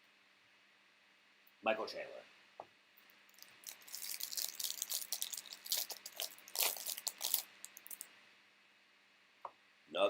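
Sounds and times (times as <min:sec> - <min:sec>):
trading cards and wrapper crinkling: 0:03.0 - 0:08.1.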